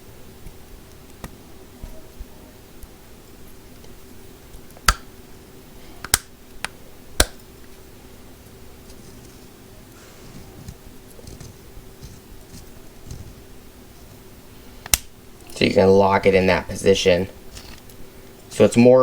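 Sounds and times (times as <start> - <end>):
bit holder snapping clicks: 6.0 - 7.4.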